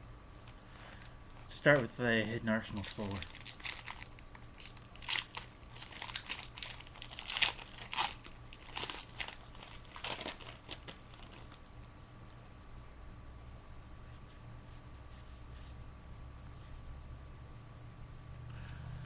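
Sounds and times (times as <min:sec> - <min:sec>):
foil wrapper crinkling and tearing: 0:02.6 - 0:11.6.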